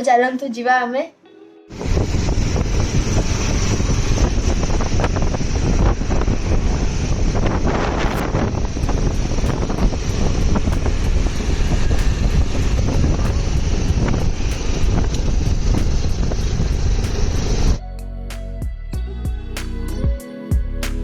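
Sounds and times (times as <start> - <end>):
wind buffeting on microphone: 1.7 - 17.8
moving vehicle rumble: 1.8 - 17.8.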